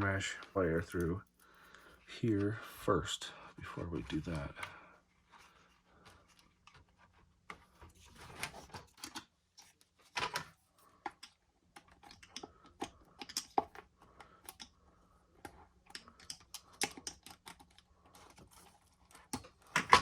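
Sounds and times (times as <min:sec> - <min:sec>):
plastic parts clicking and tapping: 0:06.0 - 0:20.0.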